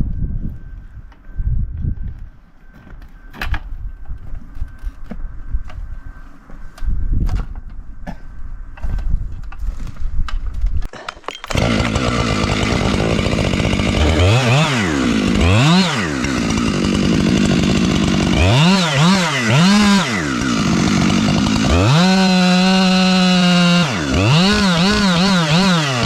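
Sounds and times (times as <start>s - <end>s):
chainsaw revving: 11.5s - 26.0s.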